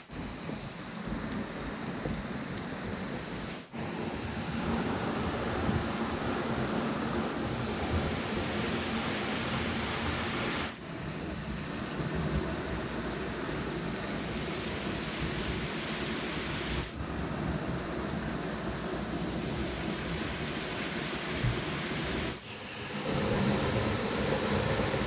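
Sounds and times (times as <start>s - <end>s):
waterfall rushing: 7.4s - 10.8s, 13.9s - 16.9s, 19.1s - 22.4s.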